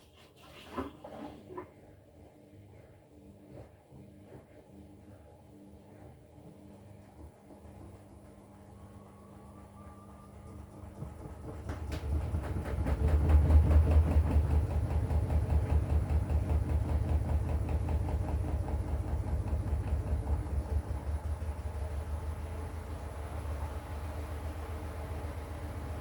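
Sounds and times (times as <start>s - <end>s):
washing machine drum rumbling: 10.3s - 26.0s.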